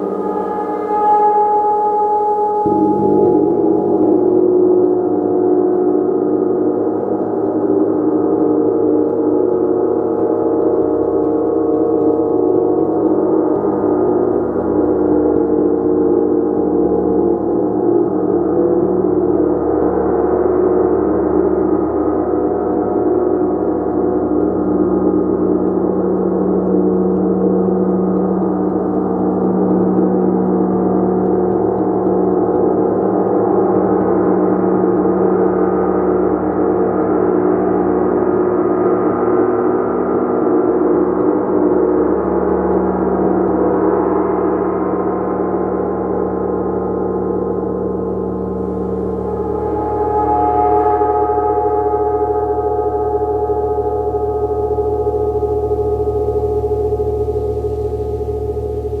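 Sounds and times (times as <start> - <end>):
gong ringing: 0.0 - 5.4.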